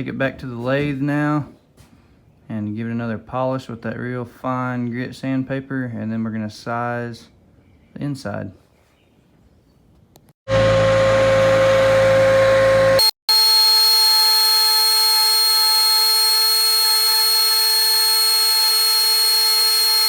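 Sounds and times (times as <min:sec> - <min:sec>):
lathe motor whining: 0:10.5 - 0:20.0.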